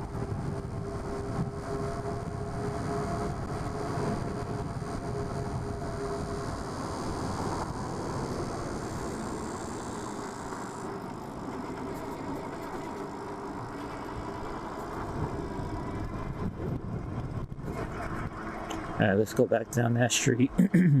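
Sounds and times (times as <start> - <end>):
wind rush: 0.0 - 8.9, 14.0 - 19.0
electric motor whine: 0.0 - 18.6.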